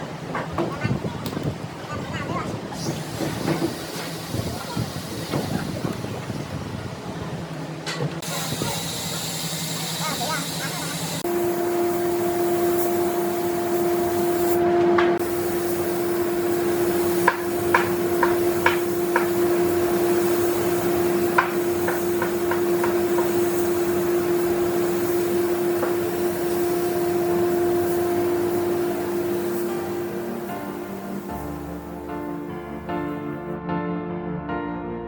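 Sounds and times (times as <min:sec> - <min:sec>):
small machine motor humming: 0:08.2 - 0:32.4.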